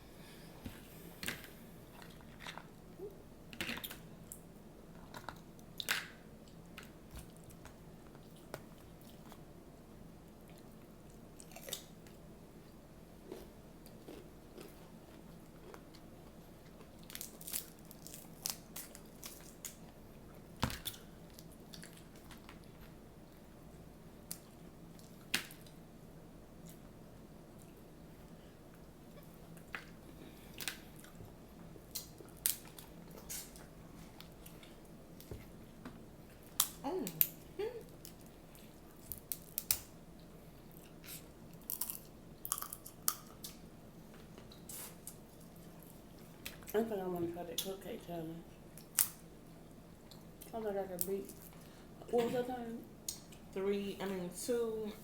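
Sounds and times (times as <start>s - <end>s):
person chewing: 13.2s - 19.8s, 40.7s - 43.6s
crab shells cracking by hand: 39.0s - 39.9s, 48.8s - 49.2s.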